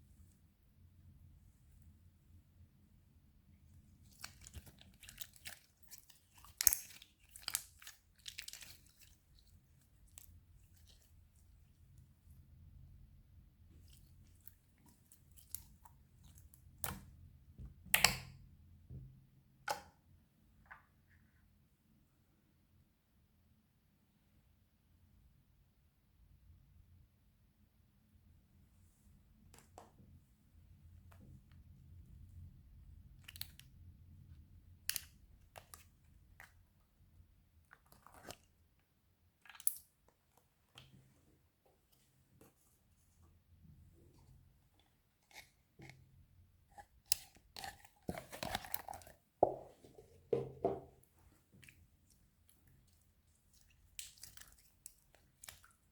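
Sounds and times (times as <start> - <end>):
slime sticky clicks and pops: 17.9 - 18.4.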